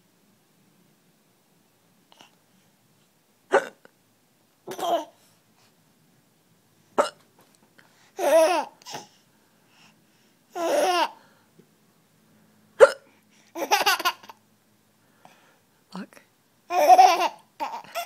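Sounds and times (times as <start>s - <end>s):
woman hiccuping: 3.5s - 3.9s, 7.0s - 7.2s, 12.8s - 13.1s
baby laughing: 4.7s - 5.2s, 8.2s - 9.0s, 10.6s - 11.2s, 13.6s - 14.4s, 16.7s - 18.0s.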